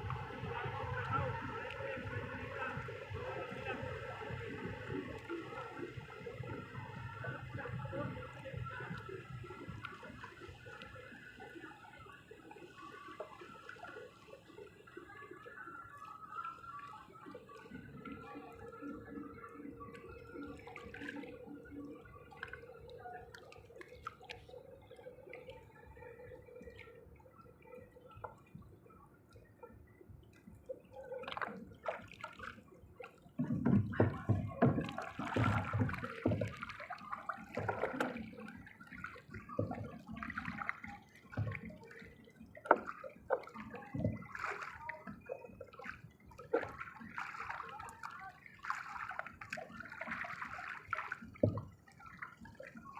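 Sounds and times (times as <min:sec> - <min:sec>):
water splashing and dripping: 0:00.0 - 0:25.6, 0:30.6 - 0:52.9
faint steady hum: 0:00.0 - 0:33.0.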